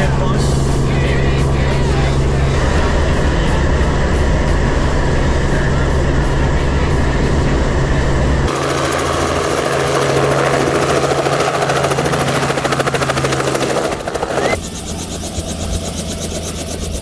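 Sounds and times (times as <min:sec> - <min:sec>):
helicopter rotor chopping: 0:00.0 - 0:17.0.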